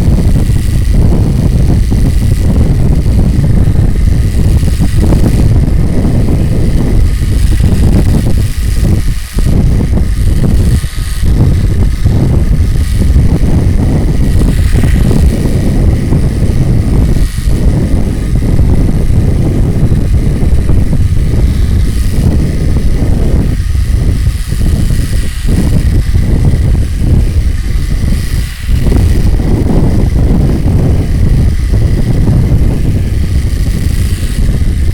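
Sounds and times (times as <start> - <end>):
card flapping against bicycle spokes: 0.0 - 34.9.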